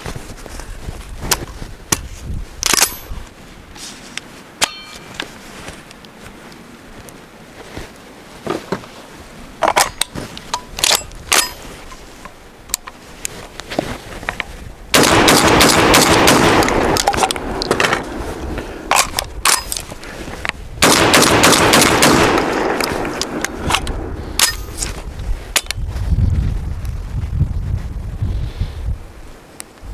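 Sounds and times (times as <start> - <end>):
metallic clanks: 4.6 - 5.2.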